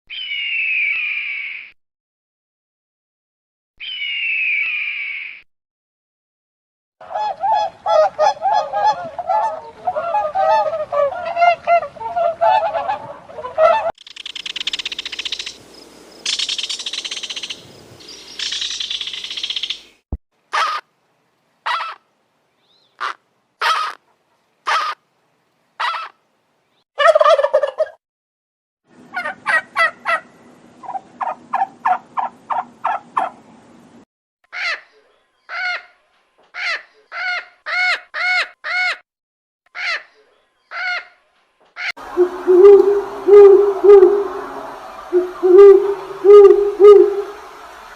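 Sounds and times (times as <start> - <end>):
turkey gobbling: 7.1 - 13.9, 21.7 - 22.0, 27.0 - 28.0, 29.1 - 33.4, 42.0 - 47.4.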